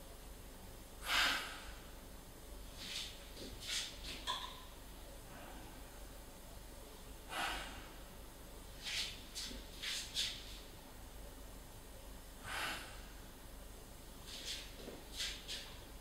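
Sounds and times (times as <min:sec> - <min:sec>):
person breathing deeply: 0:12.4 - 0:13.2.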